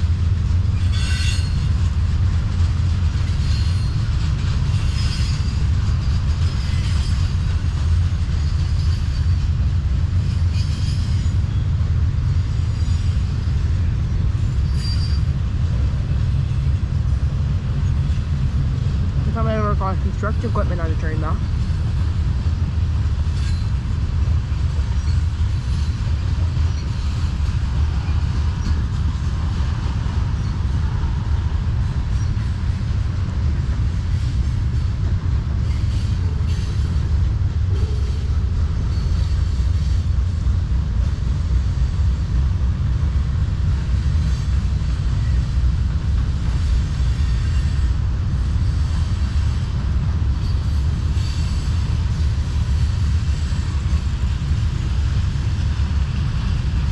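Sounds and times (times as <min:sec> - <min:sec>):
train wheels rumbling on rails: 0:00.0 - 0:56.9.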